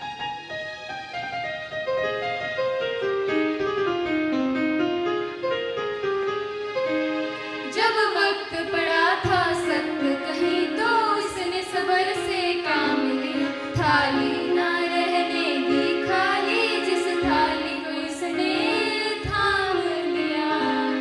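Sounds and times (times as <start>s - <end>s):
instrumental backing: 0.0s - 21.0s
girls singing: 7.7s - 21.0s.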